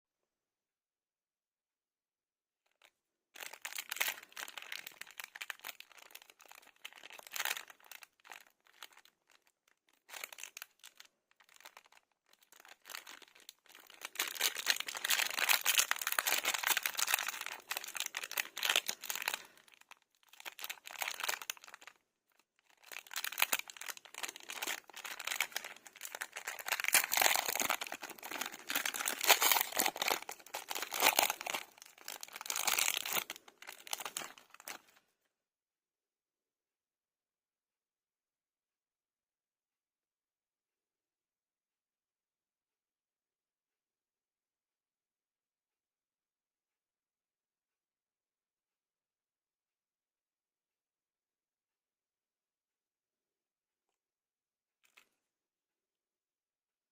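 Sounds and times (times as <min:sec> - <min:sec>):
wrappers crinkling and tearing: 0:02.8 - 0:22.0, 0:22.7 - 0:35.0.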